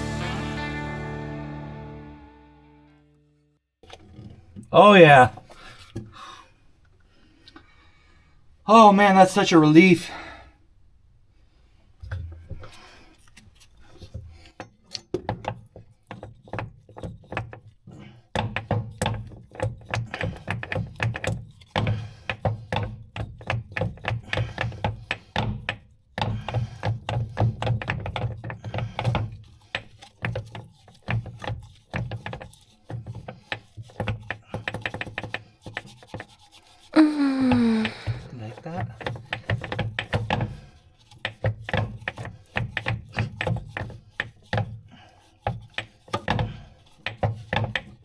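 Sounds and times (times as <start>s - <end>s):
rapid irregular knocking and clicking: 14.5s - 36.6s, 38.5s - 48.0s.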